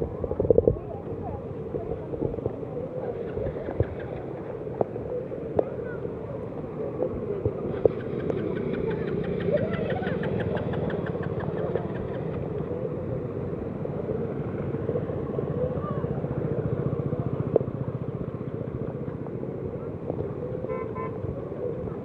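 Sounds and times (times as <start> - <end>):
vehicle engine running: 0.1 - 22.0.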